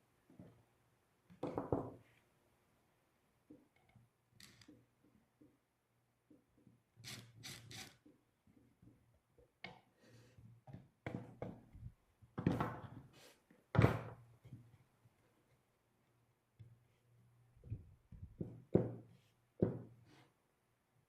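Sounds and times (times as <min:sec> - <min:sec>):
wooden knocks: 0:01.4 - 0:02.0, 0:18.2 - 0:20.0.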